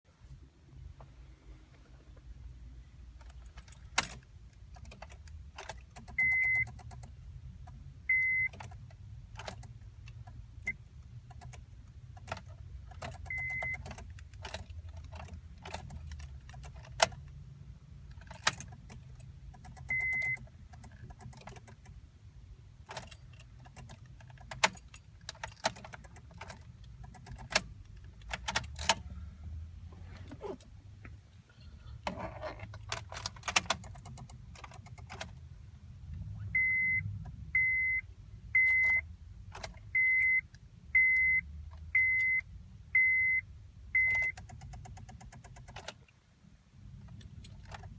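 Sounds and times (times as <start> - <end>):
car ignition clicking with buzz: 3.2 - 17.4, 18.1 - 22.0, 22.8 - 29.2, 32.0 - 35.4, 44.0 - 46.2
keys jangling: 12.3 - 17.1, 22.9 - 29.0.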